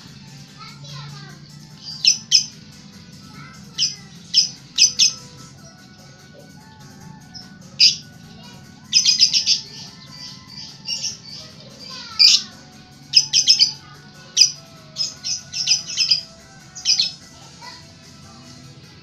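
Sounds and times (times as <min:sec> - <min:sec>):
lovebird squawking chirps: 0:01.8 - 0:02.6, 0:03.7 - 0:05.3, 0:07.4 - 0:08.1, 0:08.9 - 0:17.2.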